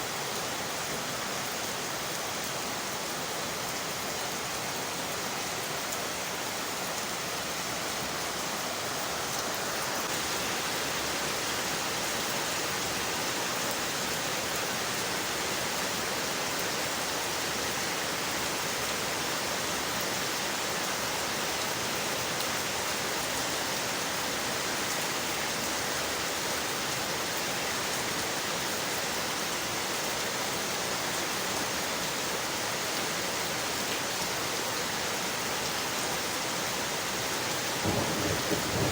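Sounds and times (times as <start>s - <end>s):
rain on window glass: 37.7s - 38.9s.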